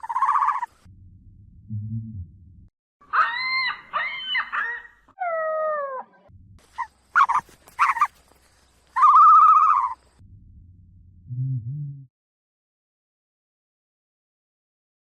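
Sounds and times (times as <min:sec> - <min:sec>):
high wavering animal calls: 0:00.0 - 0:00.9, 0:03.0 - 0:08.2, 0:08.9 - 0:10.1.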